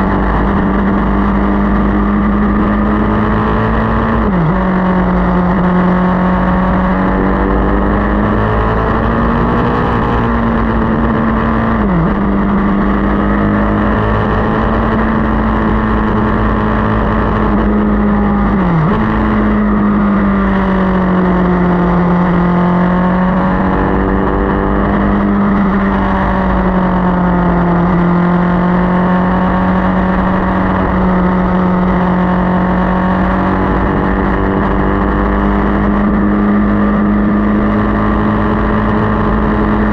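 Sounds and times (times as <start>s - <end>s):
continuous rushing noise: 0.0s - 19.9s
motorcycle engine running: 0.0s - 39.9s.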